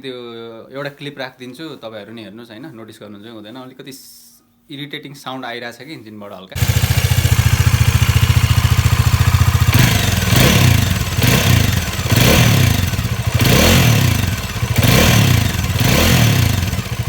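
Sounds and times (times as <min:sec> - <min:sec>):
motorcycle engine idling and revving: 0:06.6 - 0:17.0.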